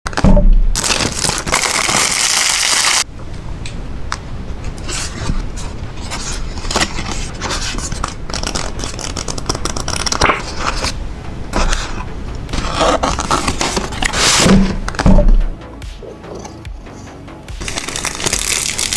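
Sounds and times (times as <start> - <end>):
packaging rustling and crackling: 0.8 - 3.0, 6.0 - 11.0, 12.6 - 14.5, 17.6 - 18.9.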